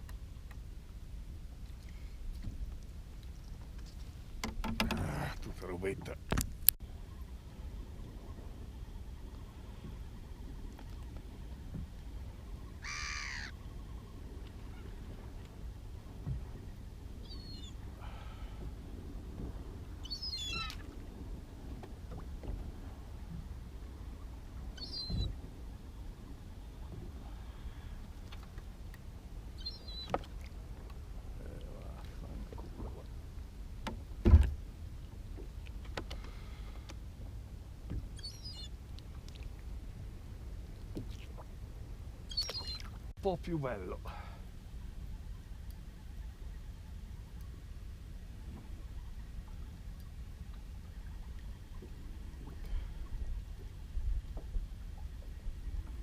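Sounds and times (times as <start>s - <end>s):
light clicks and knocks: 3.8s - 5.1s
bird calling: 12.5s - 15.0s, 17.2s - 18.5s, 20.0s - 20.9s, 24.8s - 25.4s, 29.6s - 30.2s, 38.2s - 38.8s, 42.3s - 43.0s
heavy thump on boat: 33.8s - 34.6s
short high bird chirps: 42.3s - 42.8s.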